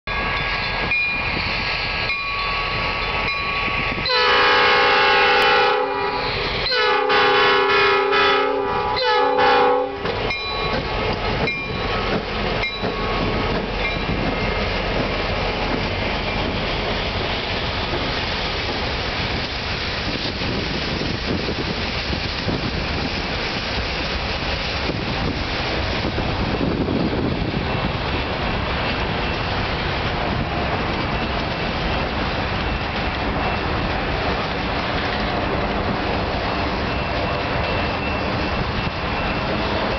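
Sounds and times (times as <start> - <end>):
train rumbling past: 0.1 - 39.9
locomotive chime horn blasts: 4.0 - 10.8.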